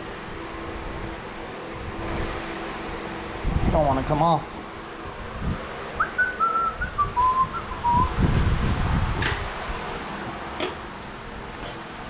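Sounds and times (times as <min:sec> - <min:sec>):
person whistling: 0:06.0 - 0:08.2.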